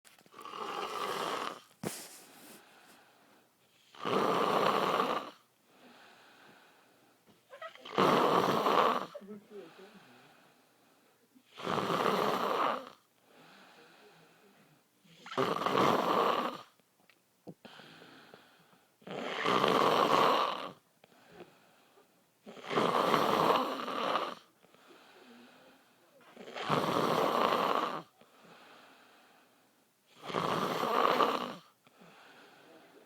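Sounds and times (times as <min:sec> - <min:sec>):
quiet breathing: 0:00.1 - 0:04.0, 0:04.8 - 0:07.6, 0:08.4 - 0:11.6, 0:12.8 - 0:15.3, 0:17.4 - 0:19.2, 0:20.7 - 0:22.6, 0:23.4 - 0:26.5, 0:27.5 - 0:30.2, 0:30.8 - 0:33.0
man snoring loudly: 0:00.4 - 0:01.6, 0:04.0 - 0:05.4, 0:07.8 - 0:09.2, 0:11.6 - 0:13.0, 0:15.2 - 0:16.7, 0:19.1 - 0:20.8, 0:22.5 - 0:24.5, 0:26.4 - 0:28.1, 0:30.2 - 0:31.7.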